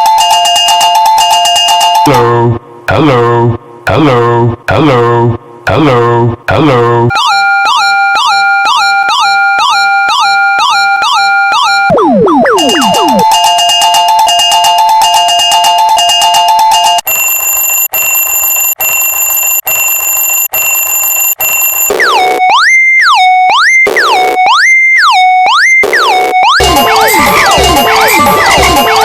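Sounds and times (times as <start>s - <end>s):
two-tone electronic warble: 11.8s - 13.5s, 25.8s - 29.0s
siren-like sweeping tone: 11.9s - 13.3s
steady high beep: 11.9s - 13.4s, 26.6s - 29.0s.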